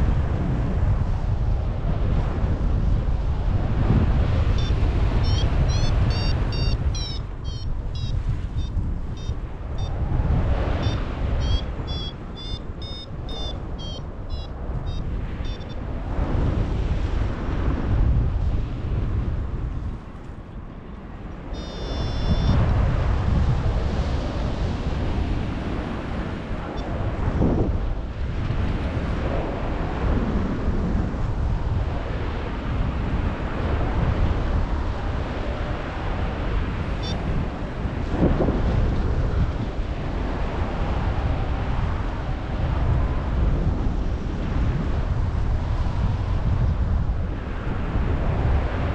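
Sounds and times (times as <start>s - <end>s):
wind buffeting microphone: 0.0s - 48.9s
variometer beeping chirps: 4.5s - 10.0s, 10.7s - 15.8s, 21.5s - 22.6s
brief high tone: 4.6s - 9.9s, 10.8s - 15.8s, 21.6s - 22.6s.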